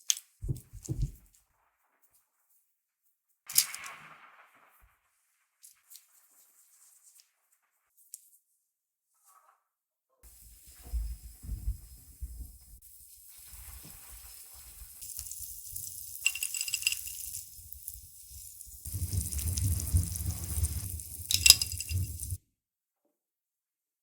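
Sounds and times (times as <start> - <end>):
utensils and dishes clinking: 16.1 - 17.6, 18.8 - 22.4.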